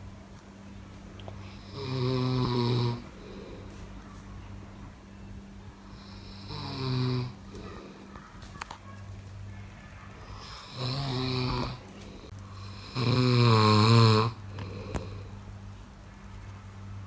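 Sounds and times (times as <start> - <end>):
faint low hum: 0.0 - 17.0
person snoring: 1.5 - 3.7, 10.4 - 15.3.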